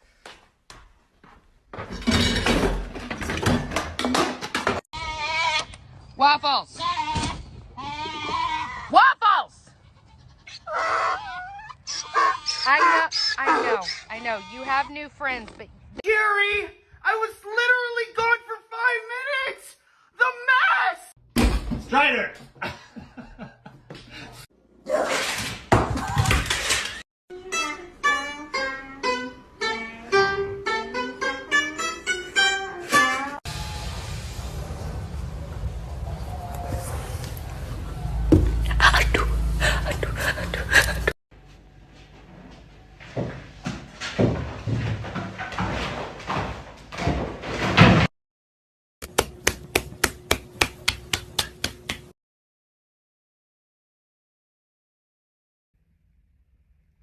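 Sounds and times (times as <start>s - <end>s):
irregular clattering and knocking: 1.7s - 4.9s, 43.2s - 48.1s
plucked string melody: 27.3s - 33.0s.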